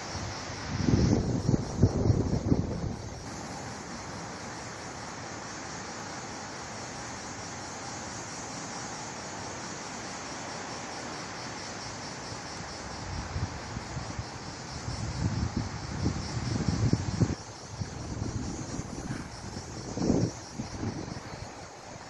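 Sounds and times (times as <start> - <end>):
wind hiss: 0.0 - 22.0
wind buffeting microphone: 0.7 - 3.2, 14.8 - 22.0.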